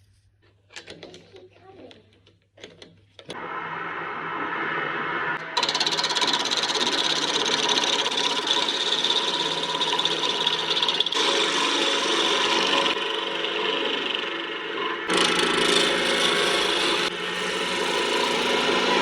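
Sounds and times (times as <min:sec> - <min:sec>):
lathe tool rasping scrape: 0:05.6 - 0:19.0.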